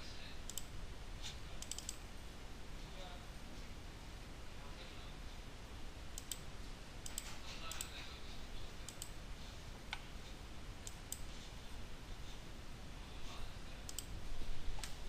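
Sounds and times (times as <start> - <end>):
faint room hiss: 0.0 - 15.0
computer mouse clicks: 0.5 - 2.0, 6.1 - 8.0, 8.8 - 9.2, 10.8 - 11.4, 13.9 - 15.0.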